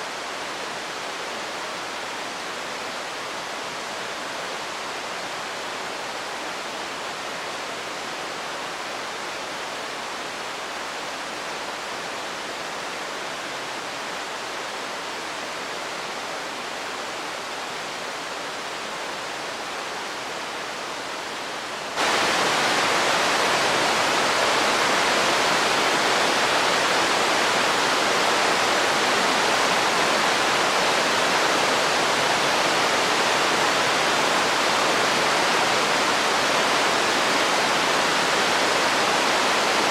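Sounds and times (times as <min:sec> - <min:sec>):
fountain water splashing: 0:22.0 - 0:39.9.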